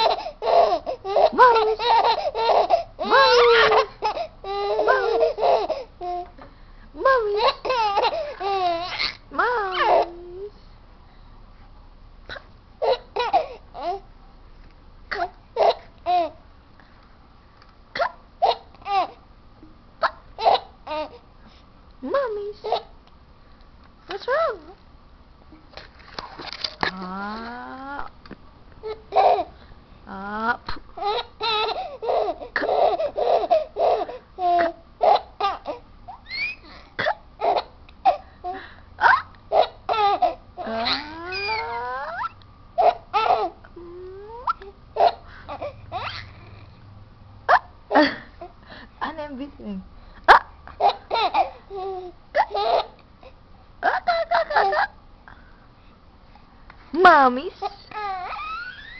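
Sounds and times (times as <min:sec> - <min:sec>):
baby laughing with hiccups: 0:00.0 - 0:06.2, 0:07.4 - 0:09.2, 0:12.3 - 0:14.0, 0:18.0 - 0:19.2, 0:20.0 - 0:21.2, 0:31.0 - 0:38.2, 0:39.0 - 0:43.6, 0:44.3 - 0:46.5, 0:50.3 - 0:53.0, 0:53.8 - 0:55.0
baby hiccups: 0:18.0 - 0:18.2.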